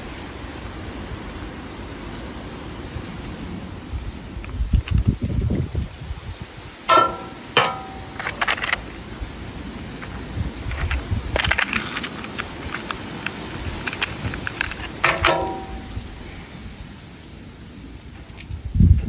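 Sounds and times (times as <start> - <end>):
wind rumbling on microphone: 0.0 - 19.0
small metal pieces clinking: 6.9 - 8.8, 13.9 - 16.2.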